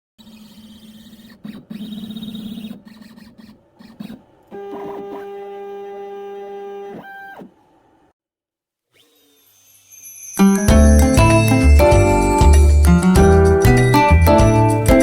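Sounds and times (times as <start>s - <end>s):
router motors whining: 0.2s - 8.1s, 9.0s - 10.5s.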